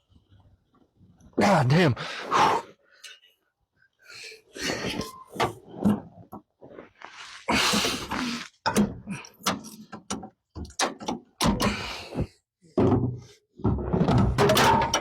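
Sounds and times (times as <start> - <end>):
hand tools clunking on metal: 12.8 - 15.0.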